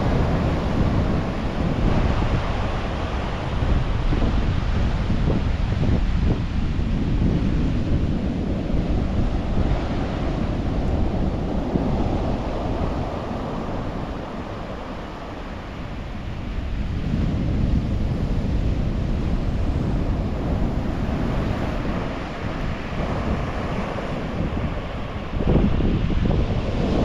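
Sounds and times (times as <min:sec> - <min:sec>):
sea surf washing onto beach: 0:00.0 - 0:27.0
wind buffeting microphone: 0:00.0 - 0:27.0.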